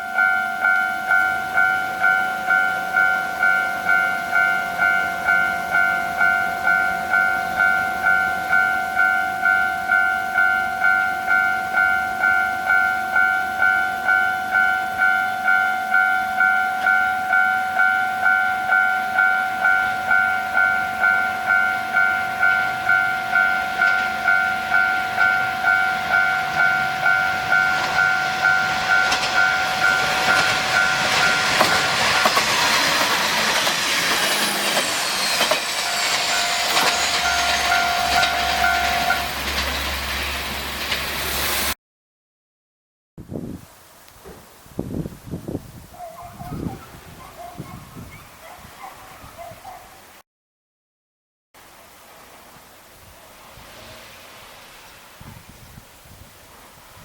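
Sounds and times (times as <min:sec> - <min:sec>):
level crossing warning bell: 0:00.0 - 0:40.6
diesel railcars rumbling: 0:00.0 - 0:41.8.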